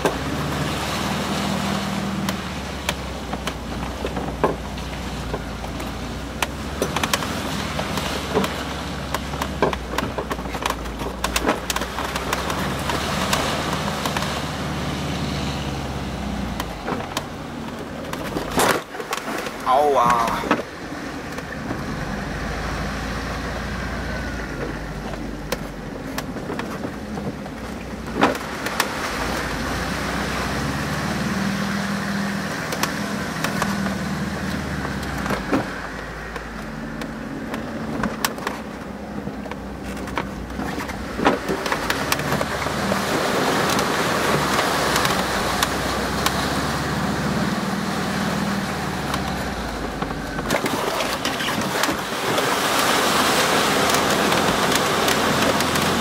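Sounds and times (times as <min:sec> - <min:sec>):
off-road vehicle engine: 0:00.0 - 0:56.0
vehicle body knocks and rattles: 0:02.3 - 0:14.4.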